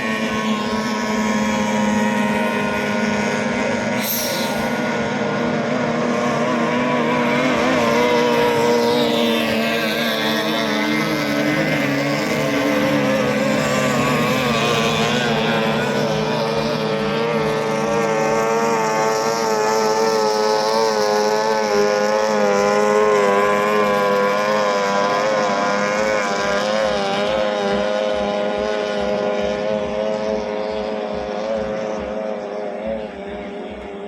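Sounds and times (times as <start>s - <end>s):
outboard motor at high revs: 0.0s - 34.0s.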